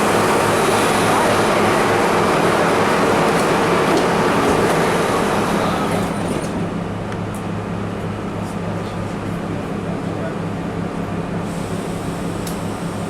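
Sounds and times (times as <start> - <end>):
subway car rumble: 0.0 - 13.0.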